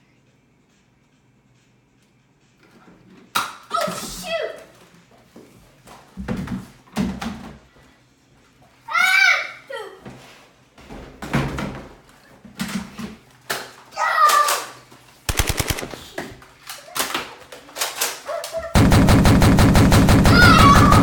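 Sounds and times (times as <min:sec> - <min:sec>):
rapid automatic gunfire: 0:15.3 - 0:16.2, 0:18.8 - 0:21.0
person shouting: 0:20.2 - 0:21.0.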